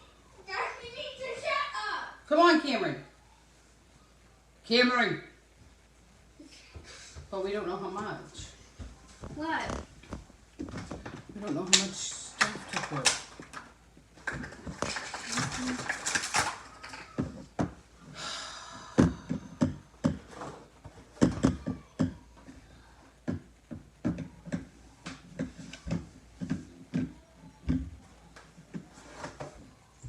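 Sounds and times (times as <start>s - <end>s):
objects knocking and clattering: 9.2s - 17.9s, 19.0s - 22.2s.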